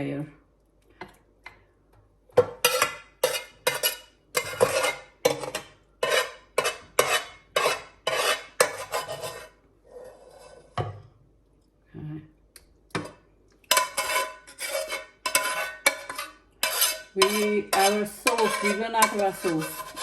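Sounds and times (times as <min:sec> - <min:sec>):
utensil scraping baking dish: 0:02.6 - 0:11.0, 0:13.7 - 0:20.0.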